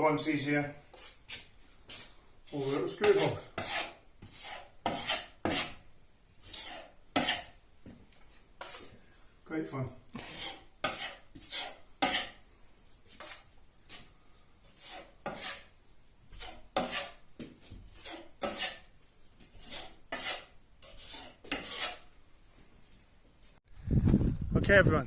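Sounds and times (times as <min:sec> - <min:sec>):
filling knife scraping plasterboard: 0:02.5 - 0:05.8, 0:06.4 - 0:07.6, 0:10.2 - 0:12.4, 0:13.2 - 0:13.5, 0:14.6 - 0:15.8, 0:16.4 - 0:17.2, 0:17.9 - 0:18.9, 0:19.6 - 0:22.1.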